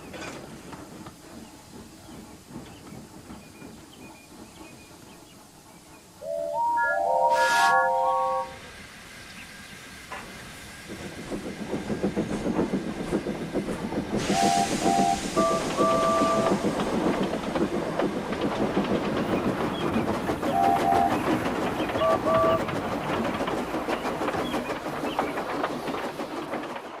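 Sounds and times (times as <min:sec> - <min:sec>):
steam locomotive chuffing: 0:00.0 - 0:07.1, 0:08.1 - 0:27.0
steam hissing: 0:00.4 - 0:26.8
chime whistle toots: 0:06.2 - 0:08.6.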